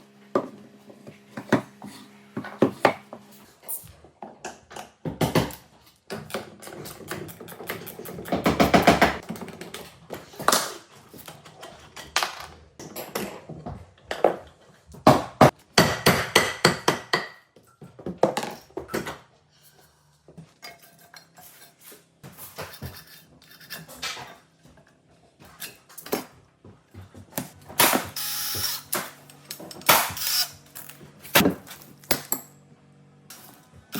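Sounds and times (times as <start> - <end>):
tools knocking and scraping on wood: 0.3 - 19.3, 20.3 - 32.5.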